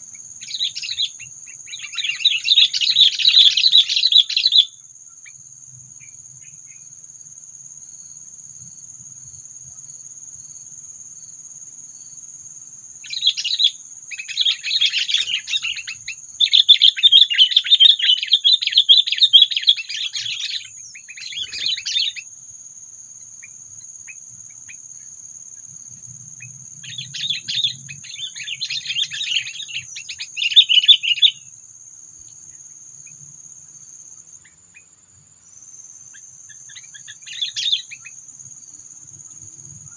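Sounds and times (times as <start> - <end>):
high-pitched insect drone: 0.0 - 39.9
bird chattering calls: 26.9 - 31.4.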